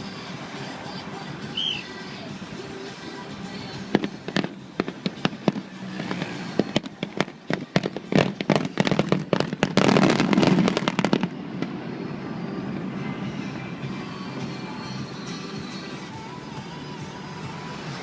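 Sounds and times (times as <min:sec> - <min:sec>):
fireworks bangs: 0:03.9 - 0:11.8.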